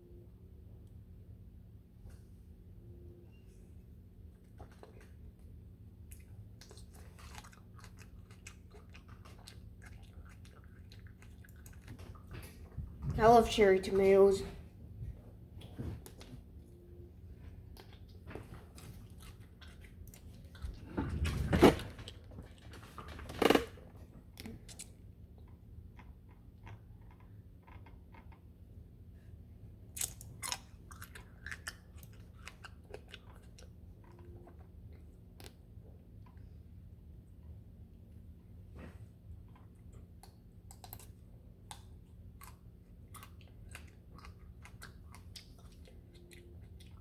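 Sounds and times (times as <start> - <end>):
person biting and chewing: 6.1 - 12.6, 29.9 - 34.3.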